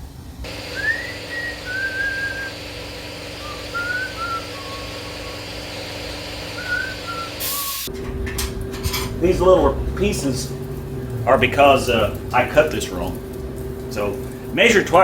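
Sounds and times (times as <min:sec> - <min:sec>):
mechanical hum and hiss: 0:00.0 - 0:15.0
person whistling a tune: 0:00.7 - 0:02.5, 0:03.4 - 0:05.4, 0:06.6 - 0:07.9.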